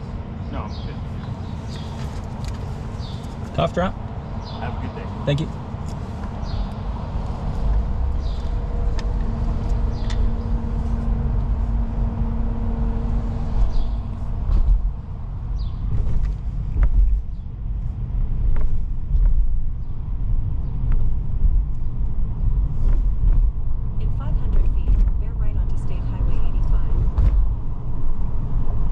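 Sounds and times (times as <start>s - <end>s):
car engine and road rumble: 0.0s - 28.9s
steady hum: 0.0s - 28.9s.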